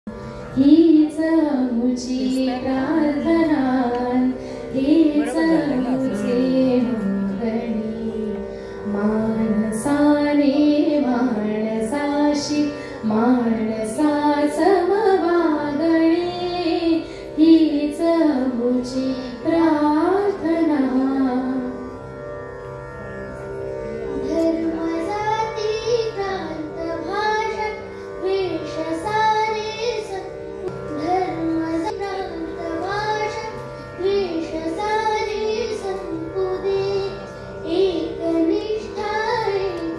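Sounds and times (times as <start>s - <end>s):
instrumental accompaniment: 0.1s - 39.9s
high voice singing devotional song: 0.6s - 21.8s.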